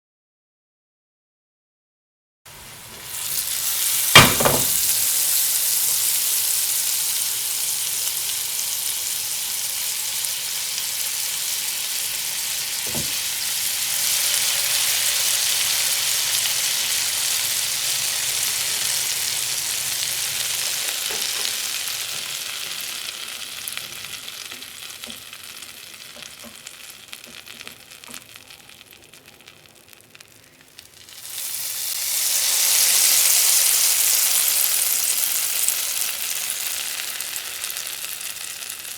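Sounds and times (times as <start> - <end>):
food sizzling in hot oil: 2.5 - 38.9
sharp knock: 4.2 - 5.0.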